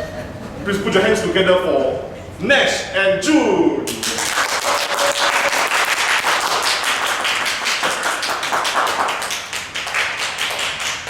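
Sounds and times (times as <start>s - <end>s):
audience applauding: 3.9s - 11.0s.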